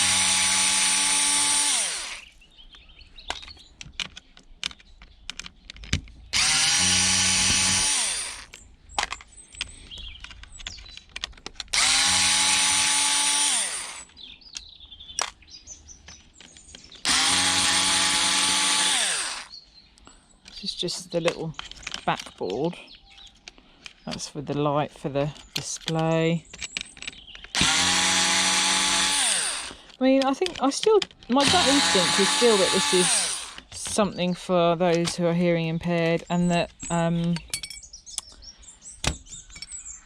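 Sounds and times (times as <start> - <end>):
electric drill unscrewing screws: 0.0 - 2.3, 3.3 - 14.2, 16.2 - 19.5, 23.4 - 37.6
handling clicks and clatter: 2.7 - 6.3, 8.5 - 11.8, 14.0 - 17.1, 20.4 - 27.8, 29.7 - 38.4.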